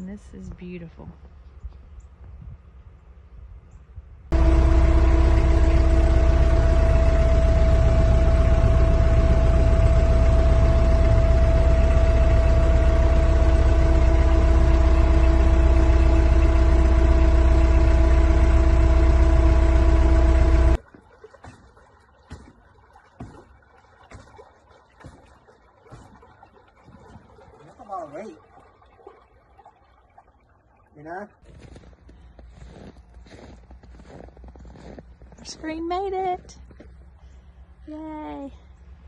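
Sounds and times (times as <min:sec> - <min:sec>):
engine running with deep rumble: 0:00.0 - 0:20.8, 0:31.4 - 0:39.0.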